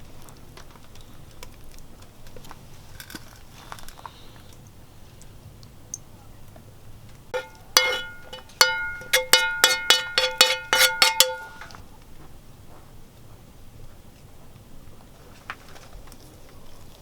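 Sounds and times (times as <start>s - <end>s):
metal utensil tapping a ringing dish: 7.4s - 11.8s.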